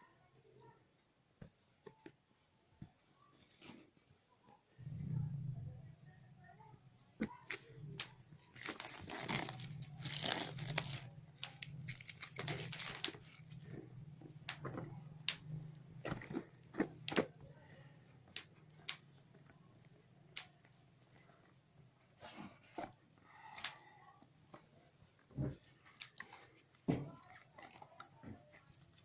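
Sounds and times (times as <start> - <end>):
packaging crinkling and rustling: 7.4 - 13.8.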